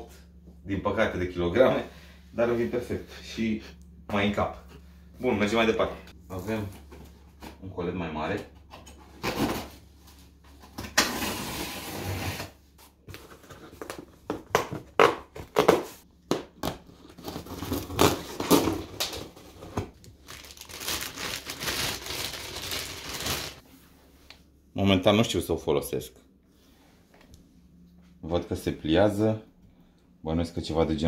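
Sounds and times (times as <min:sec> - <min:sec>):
plastic and paper crinkling: 0:17.0 - 0:23.6.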